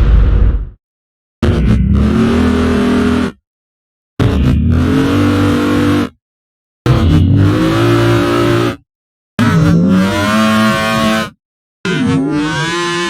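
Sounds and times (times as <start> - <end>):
low hum: 0.0 - 0.8.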